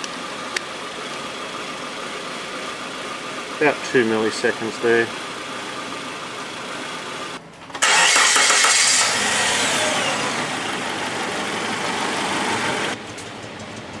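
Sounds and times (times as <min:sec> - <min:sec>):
car engine revving: 0:03.5 - 0:13.0.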